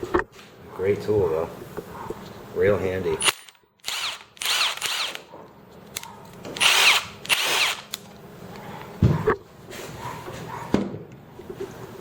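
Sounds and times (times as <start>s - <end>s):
impact wrench motor whine: 3.8s - 5.2s, 6.6s - 8.0s.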